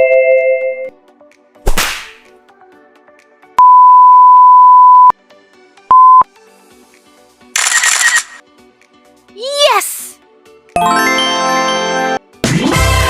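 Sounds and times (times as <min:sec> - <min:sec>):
censor bleep tone: 0:03.6 - 0:05.1, 0:05.9 - 0:06.2.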